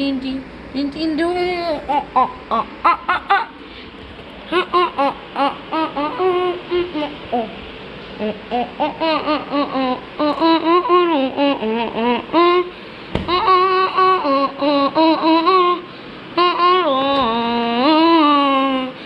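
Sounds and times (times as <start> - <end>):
young child babbling and laughing: 4.5 - 7.6, 8.2 - 12.7, 13.3 - 19.0.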